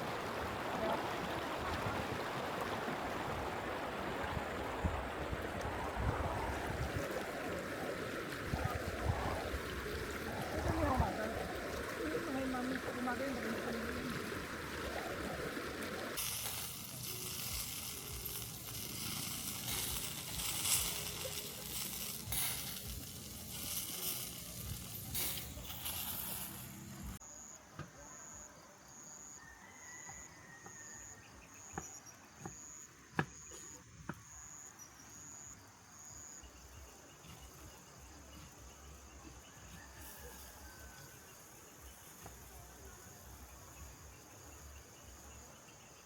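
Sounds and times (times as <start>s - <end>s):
steady hiss: 4.6s - 27.2s
insect chirping: 16.2s - 46.0s.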